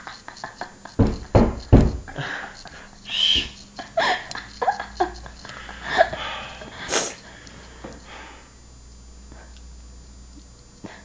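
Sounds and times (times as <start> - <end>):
breathy vocal noises: 2.1 - 8.6
person sniffing: 5.3 - 8.5.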